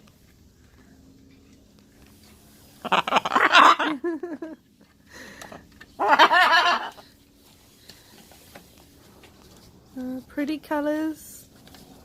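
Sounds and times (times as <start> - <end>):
person laughing: 2.8 - 4.6, 6.0 - 7.0.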